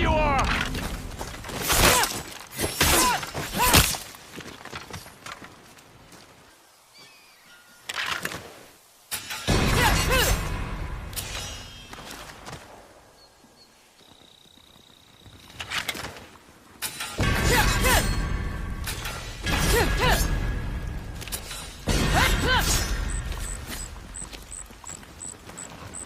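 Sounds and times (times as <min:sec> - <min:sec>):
steel blades clashing and ringing: 0:16.8 - 0:20.4.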